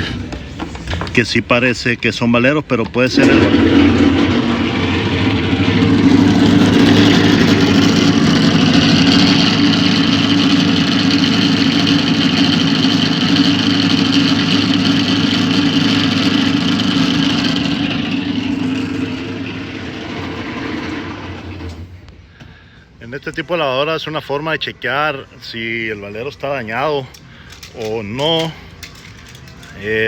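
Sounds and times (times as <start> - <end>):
washing machine spinning with grinding: 3.0 - 22.1.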